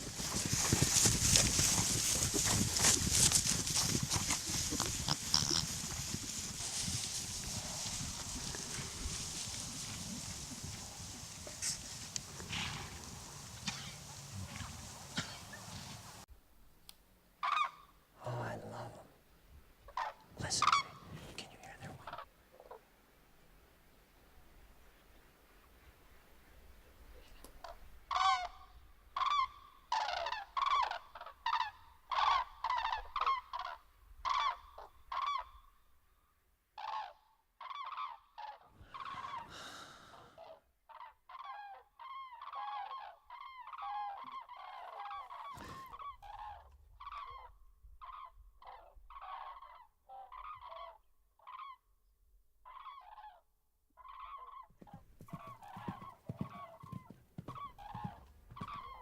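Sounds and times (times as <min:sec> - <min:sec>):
flock of large birds calling: 0:29.2 - 0:35.5, 0:36.8 - 0:39.5.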